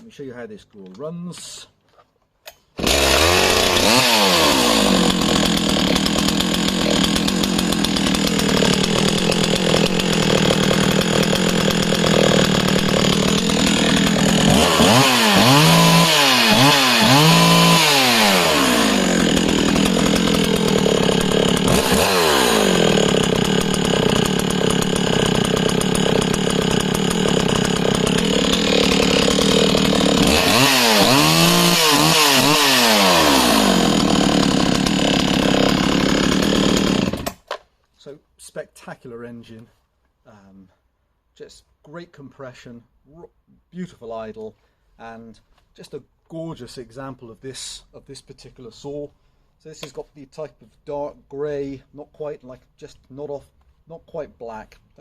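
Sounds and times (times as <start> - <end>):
chainsaw engine revving and idling: 2.8 - 37.4.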